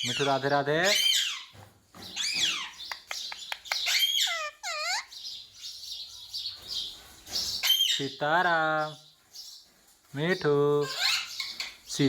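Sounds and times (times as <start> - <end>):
parakeet chirping: 0.0 - 1.5, 2.1 - 8.2, 10.8 - 12.0
sharp clicks: 2.8 - 3.9.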